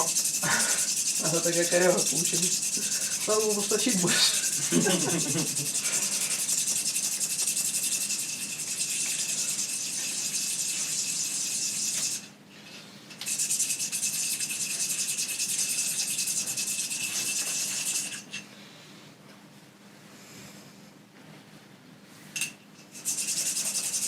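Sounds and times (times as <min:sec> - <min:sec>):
angle grinder grinding metal: 0:00.0 - 0:12.3, 0:23.0 - 0:24.0.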